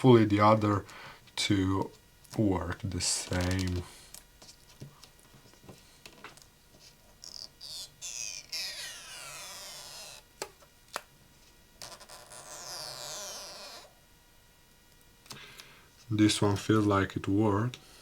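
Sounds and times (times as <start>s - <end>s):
adhesive tab squealing: 7.2s - 10.3s, 11.8s - 13.9s.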